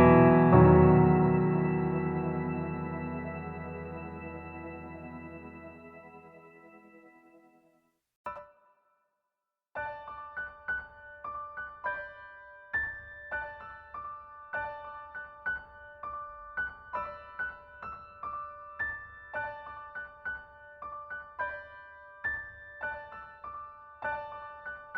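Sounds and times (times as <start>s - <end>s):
gentle piano melody: 0.0s - 7.5s.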